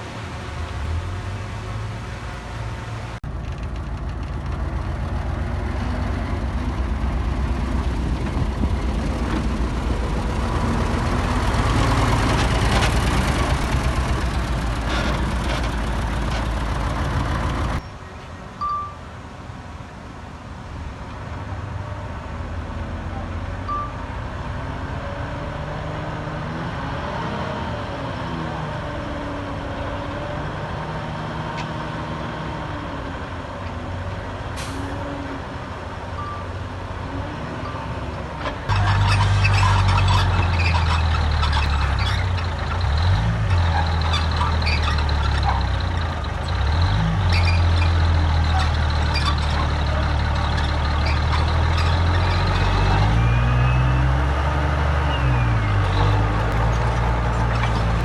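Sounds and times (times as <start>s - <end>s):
heavy machinery diesel engine: 0.0s - 17.8s, 20.8s - 58.0s
rattling clatter: 38.6s - 52.7s.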